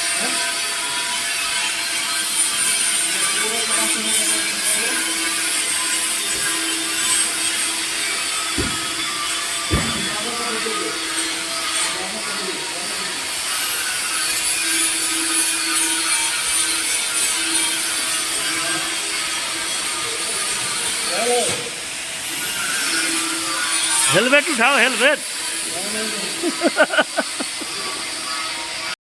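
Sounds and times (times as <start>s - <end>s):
welding arc hissing: 18.9s - 28.9s.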